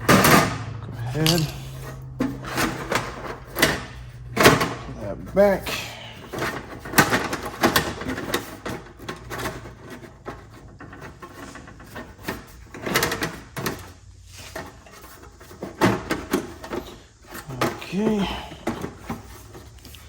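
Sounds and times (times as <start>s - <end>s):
small parts clicking and knocking: 0.0s - 5.0s.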